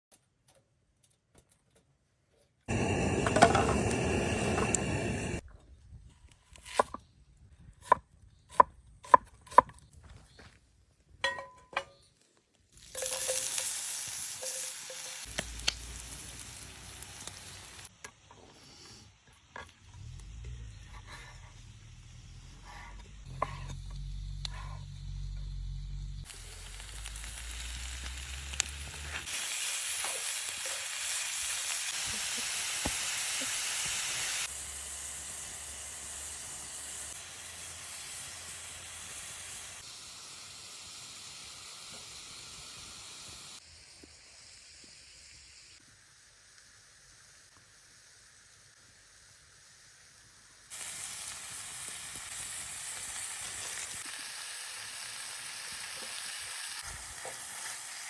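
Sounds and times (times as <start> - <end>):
meat sizzling in a pan: 2.7 - 5.4, 12.8 - 20.8, 24.9 - 58.0
sharp pops of frying: 2.7 - 5.4, 12.7 - 18.3, 32.6 - 34.6, 50.7 - 58.0.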